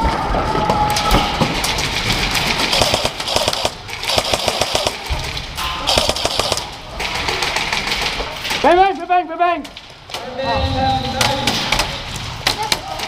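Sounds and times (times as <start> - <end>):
airsoft guns firing bursts: 2.6 - 5.1, 5.8 - 7.9.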